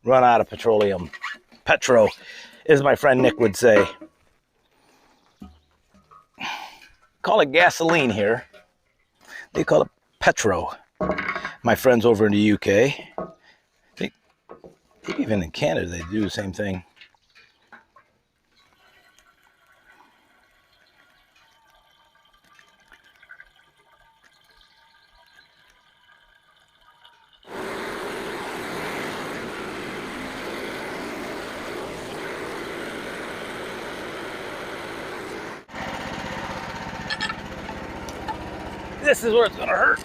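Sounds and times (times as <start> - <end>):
gasoline pouring into a tank: 15.1 - 40.0.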